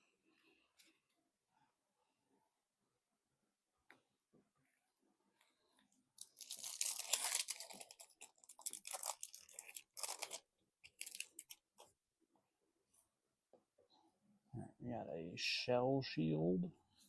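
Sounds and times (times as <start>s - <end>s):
foil wrapper tearing and crinkling: 6.2s - 11.6s.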